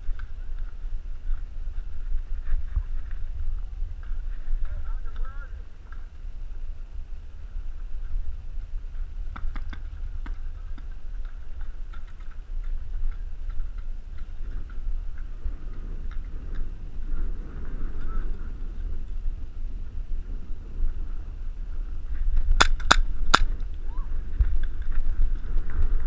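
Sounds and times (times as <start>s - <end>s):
wind rumble on microphone: 0.0s - 26.0s
sharp clicks: 22.6s - 23.7s.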